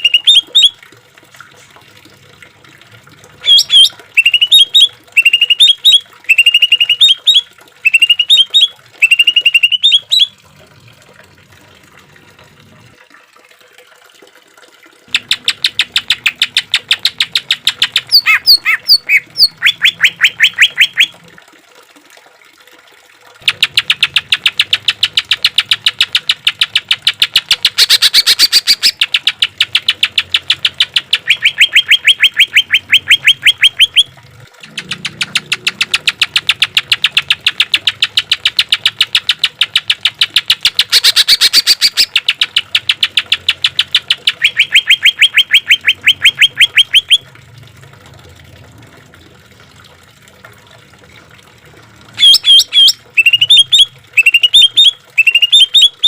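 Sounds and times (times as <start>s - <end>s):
bird singing rapid trills: 3.4s - 10.3s, 15.1s - 21.1s, 23.4s - 34.1s, 34.7s - 47.2s, 52.2s - 56.0s.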